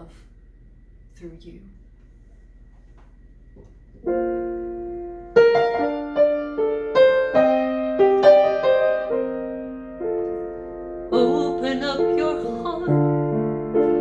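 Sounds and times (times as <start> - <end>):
piano chord and melody: 4.0 - 14.0.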